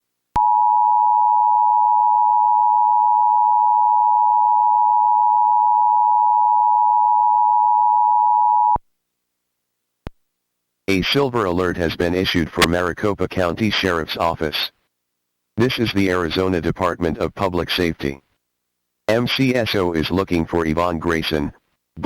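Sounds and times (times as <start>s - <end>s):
loud steady two-tone beep: 0.4s - 8.8s.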